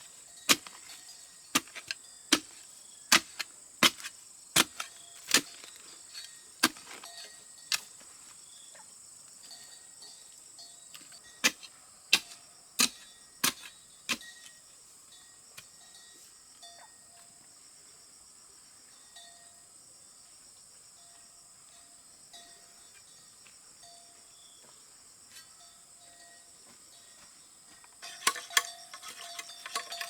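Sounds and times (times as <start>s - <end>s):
insects droning: 0.0s - 30.0s
hand tool striking wood: 0.5s - 8.1s, 11.0s - 14.5s, 28.0s - 30.0s.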